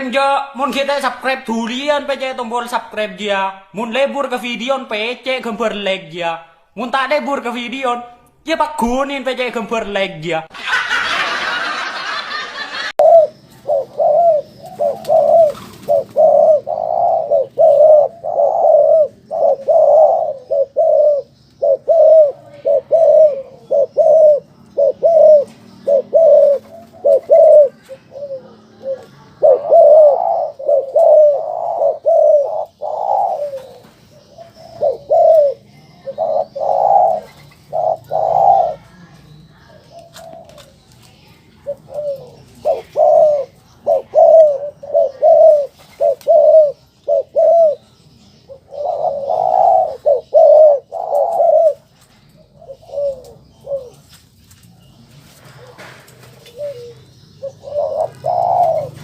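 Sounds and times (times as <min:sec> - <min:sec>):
dove cooing: 0:11.0 - 0:54.1, 0:55.4 - 0:59.0.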